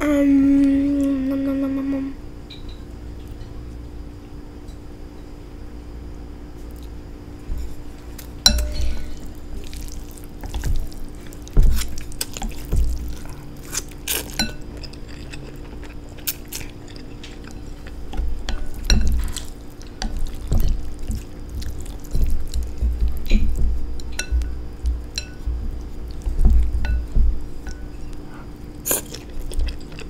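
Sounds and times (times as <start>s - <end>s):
wet mouth eating sounds: 28.8s - 30.0s.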